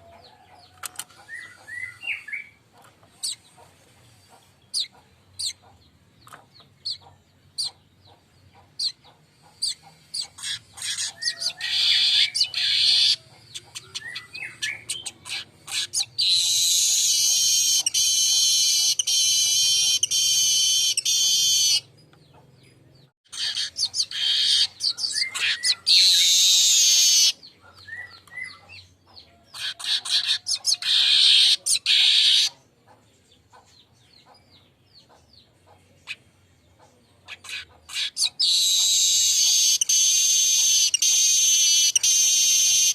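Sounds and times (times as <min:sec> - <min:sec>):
bird chattering song: 0:00.0 - 0:42.9
bird ticking calls: 0:04.3 - 0:36.2, 0:36.8 - 0:42.9.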